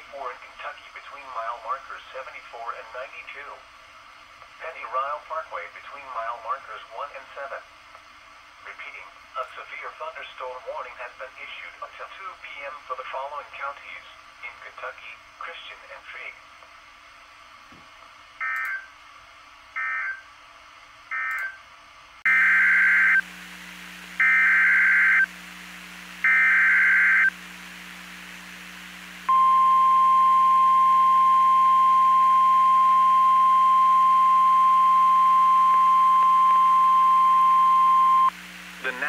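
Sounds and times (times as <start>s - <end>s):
steady alarm tone: 22.3s - 23.3s, 24.2s - 25.4s, 26.2s - 27.4s, 29.3s - 39.0s.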